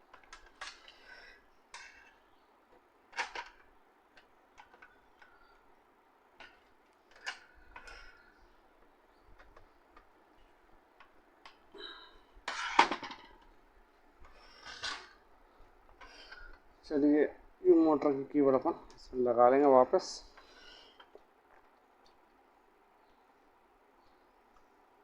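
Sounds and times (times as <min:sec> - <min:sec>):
printer parts clicking and knocking: 0:03.1 - 0:03.6.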